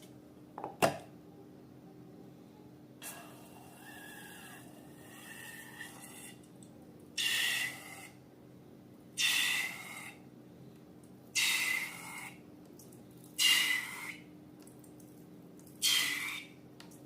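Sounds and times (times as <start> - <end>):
air hissing from balloon: 11.4 - 12.4.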